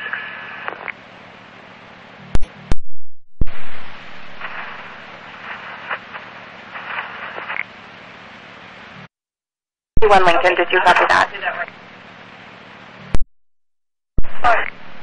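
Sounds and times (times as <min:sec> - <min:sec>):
radio static hiss: 0:00.0 - 0:01.0, 0:03.4 - 0:09.1, 0:10.0 - 0:13.2, 0:14.2 - 0:15.0
radio squelch clicks: 0:00.6 - 0:01.0
faint garbled radio voices: 0:10.0 - 0:13.1.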